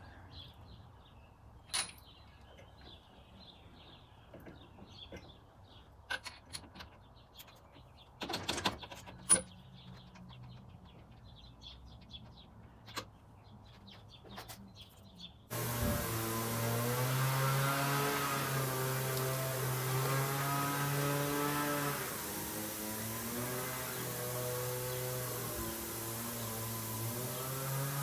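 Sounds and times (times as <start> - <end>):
loud steady hum: 15.5 - 28.0.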